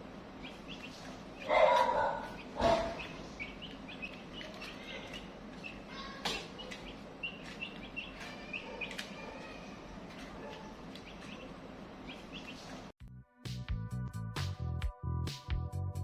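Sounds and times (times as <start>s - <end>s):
chicks peeping: 0.3s - 12.9s.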